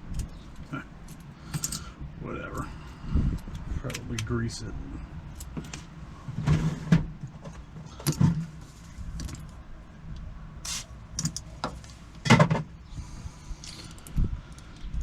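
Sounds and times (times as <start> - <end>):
keys and lock tools jingling: 0.1 - 1.9.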